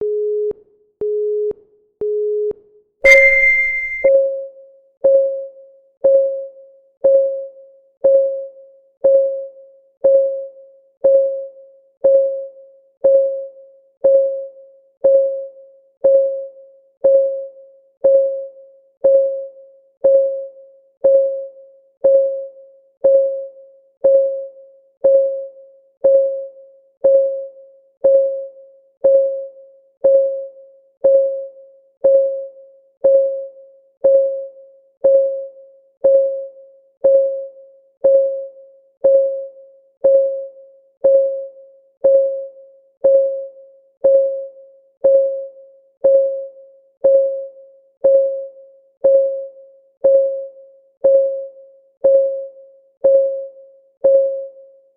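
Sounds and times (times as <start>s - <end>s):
electronic clock ticking: 3.1s - 4.1s
louder high beep: 3.1s - 4.1s
short electronic beeps: 3.1s - 4.1s.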